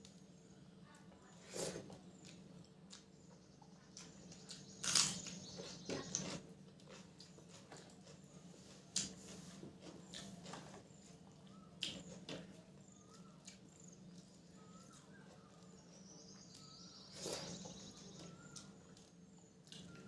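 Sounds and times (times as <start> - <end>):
person chewing food: 4.0 - 15.7, 16.5 - 20.0.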